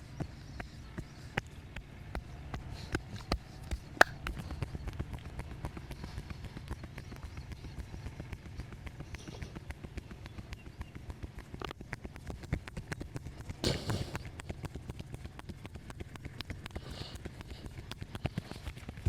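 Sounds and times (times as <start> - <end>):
hands slapping and tapping on body: 0.2 - 5.3.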